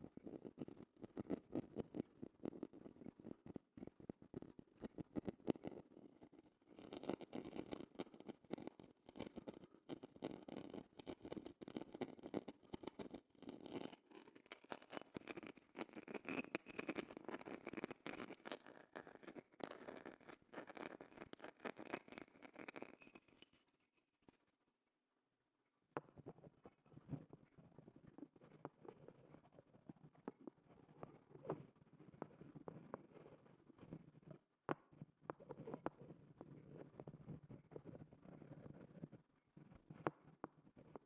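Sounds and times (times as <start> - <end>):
scratching and tapping on shell: 0.0 - 24.4, 34.2 - 41.0.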